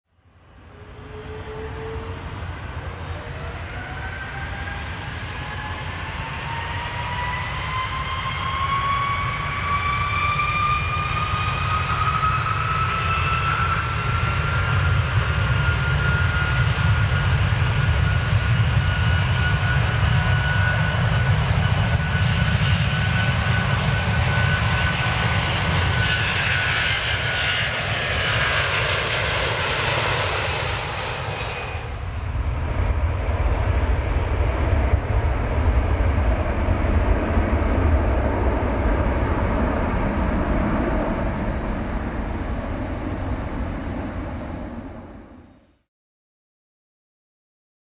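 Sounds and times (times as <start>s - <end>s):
airplane engines whine: 0.1s - 45.9s
low engine rumble: 29.9s - 45.6s.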